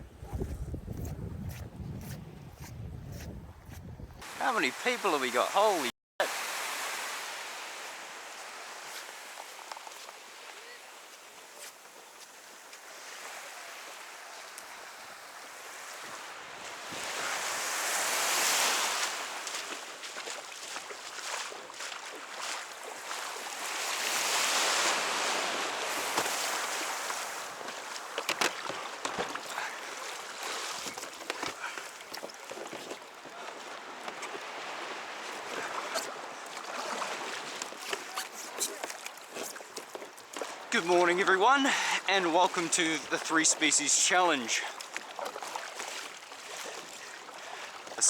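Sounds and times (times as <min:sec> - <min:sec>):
waves washing onto a beach: 0:04.2 - 0:48.0
small knocks and clicks: 0:28.2 - 0:29.3.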